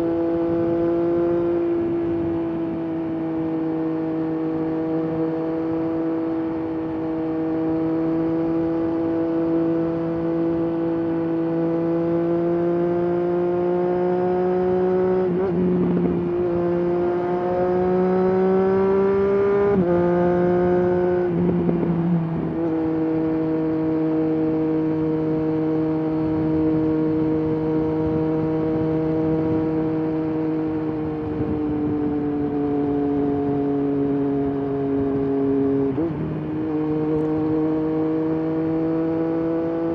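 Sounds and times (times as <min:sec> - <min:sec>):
motorcycle engine and exhaust: 0:00.0 - 0:39.9.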